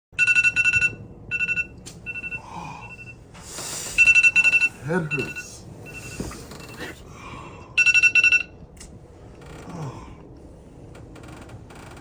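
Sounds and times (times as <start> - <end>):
high-pitched electronic alarm beeps: 0.2 - 3.2, 4.0 - 6.3, 7.8 - 8.6.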